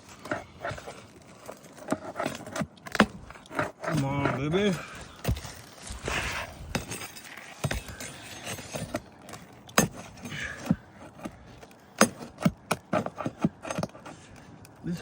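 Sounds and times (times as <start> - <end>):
metal tool scraping under shingles: 0.0 - 14.5
tool clinking against nails: 6.6 - 14.1.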